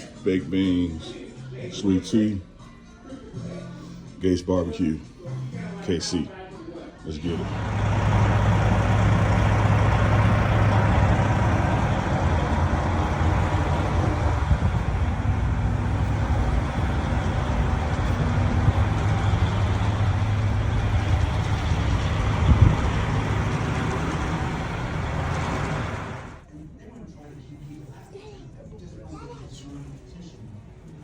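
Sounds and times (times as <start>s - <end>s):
vehicle engine and road drone: 7.3s - 26.5s
vehicle bump: 7.4s - 26.4s.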